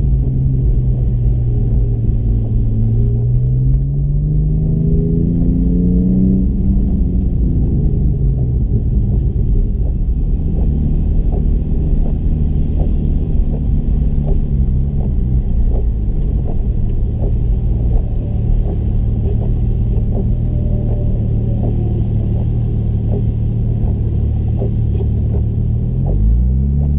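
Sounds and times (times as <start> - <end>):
car engine idling: 0.0 - 26.9.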